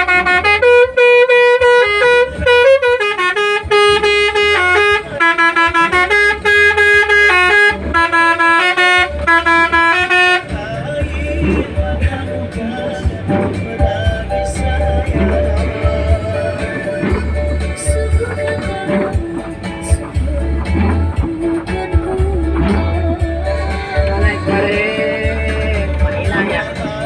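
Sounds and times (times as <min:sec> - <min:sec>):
bus horn playing quick melody: 0:00.0 - 0:10.8, 0:11.4 - 0:27.0
quiet music: 0:00.1 - 0:27.0
pulsing low tone: 0:14.9 - 0:23.5.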